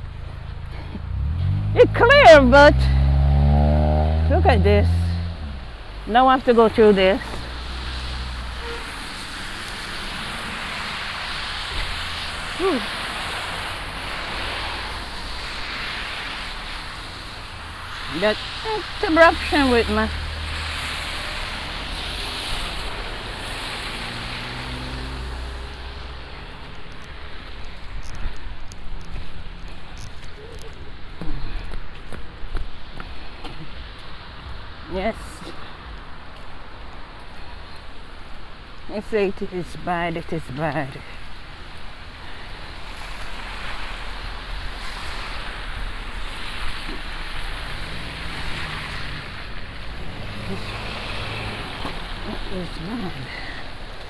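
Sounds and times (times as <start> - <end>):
vehicle engine rumble: 0.0 - 38.4, 39.8 - 54.0
rushing wind: 41.1 - 54.0.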